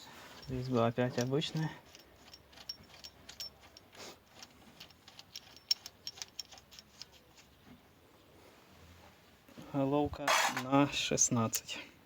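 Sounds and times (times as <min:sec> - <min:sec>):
ratchet wrench clicking: 0:04.4 - 0:07.1.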